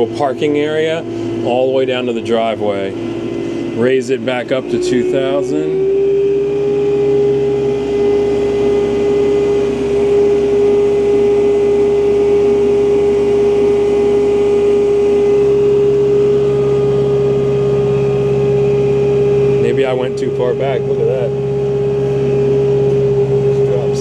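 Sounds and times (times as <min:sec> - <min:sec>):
low drone: 0:00.0 - 0:24.0
tractor diesel engine running: 0:07.2 - 0:24.0.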